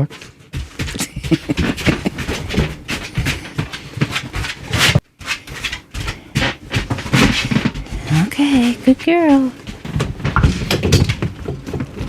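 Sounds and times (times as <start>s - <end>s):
scuffs and knocks: 9.9s - 11.1s.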